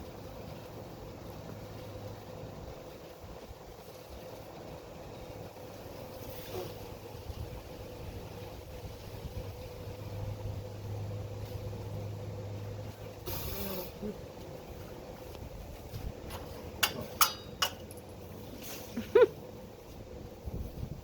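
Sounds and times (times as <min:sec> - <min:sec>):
blower humming and whining: 0:00.0 - 0:21.0.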